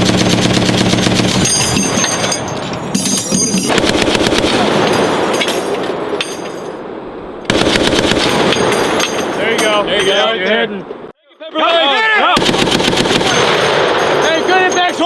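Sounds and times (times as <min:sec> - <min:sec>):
machine gun bursts: 0:00.0 - 0:02.2, 0:03.7 - 0:05.2, 0:07.5 - 0:08.8, 0:12.4 - 0:14.6.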